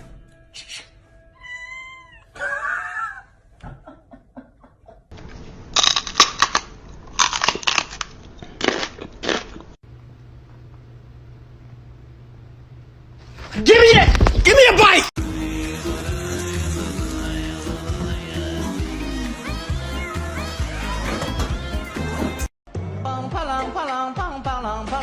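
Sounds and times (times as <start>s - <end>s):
cat meowing: 1.4s - 2.4s.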